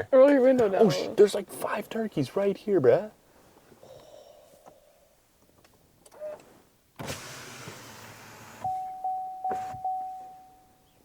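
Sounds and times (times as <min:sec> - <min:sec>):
power window motor: 0:07.0 - 0:08.8
car warning chime dinging: 0:08.6 - 0:11.0.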